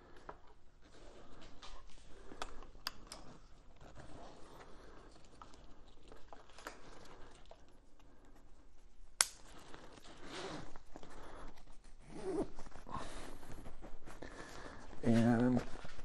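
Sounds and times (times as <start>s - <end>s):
straps rustling and scraping: 9.3s - 16.0s.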